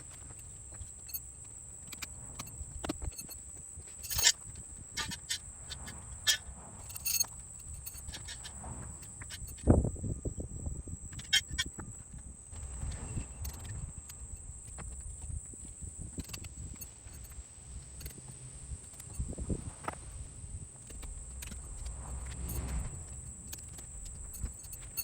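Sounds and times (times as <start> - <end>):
steady high-pitched tone: 1.9 - 15.5
low rumble: 19.3 - 25.0.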